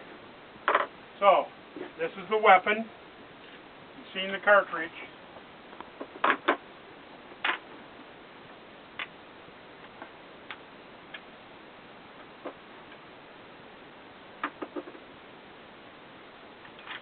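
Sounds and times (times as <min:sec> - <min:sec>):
sharp clicks and knocks: 0:05.8 - 0:06.6, 0:14.4 - 0:15.1.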